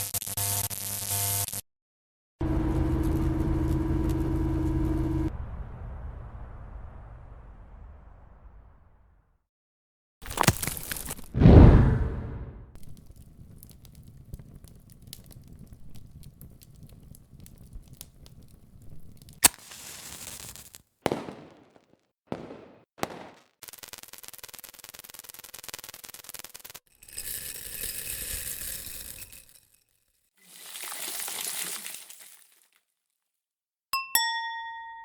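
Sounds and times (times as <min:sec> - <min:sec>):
low crackling: 0:10.2 - 0:23.5
brief swishes: 0:11.4 - 0:12.6
steady hiss: 0:19.4 - 0:21.5.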